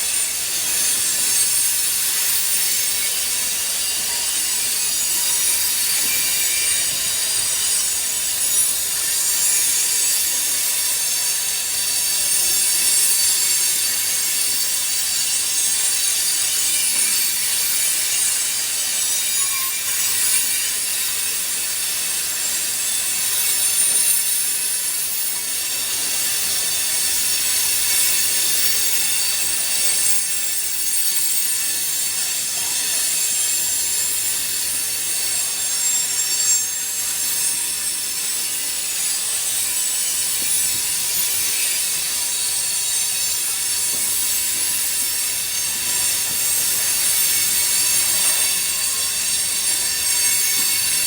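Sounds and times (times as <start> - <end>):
train wheels screeching on rails: 0.0 - 51.0.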